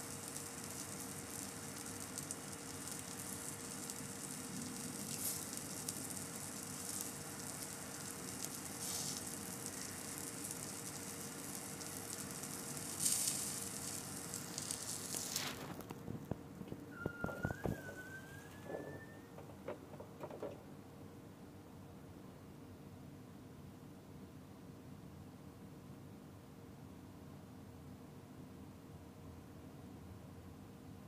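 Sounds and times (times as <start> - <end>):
barbecue sizzling on a grill: 0.0 - 20.6
faint steady hum: 0.0 - 31.0.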